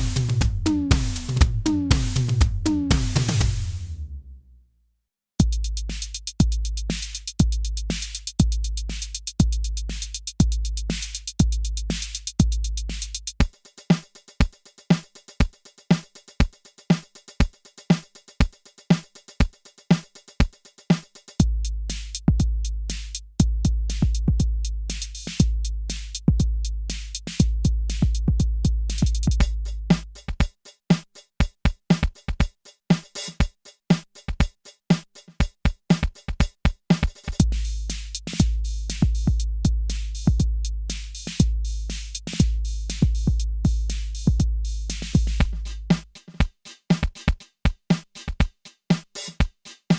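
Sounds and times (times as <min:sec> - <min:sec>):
hi-hats: 0:00.0 - 0:03.9, 0:05.4 - 0:49.9
snappy drum hits: 0:00.0 - 0:03.9
deep booming bass drum: 0:00.0 - 0:04.4, 0:21.4 - 0:30.1, 0:37.4 - 0:46.0.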